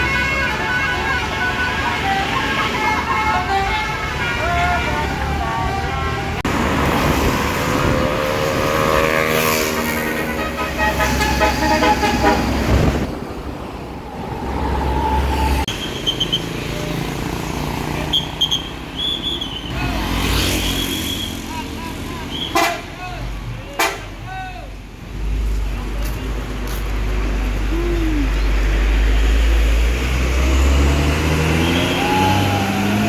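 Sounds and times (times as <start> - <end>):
bus horn playing melody: 0.0 - 6.4, 8.6 - 13.1, 22.5 - 23.0
bus engine running: 0.0 - 14.1.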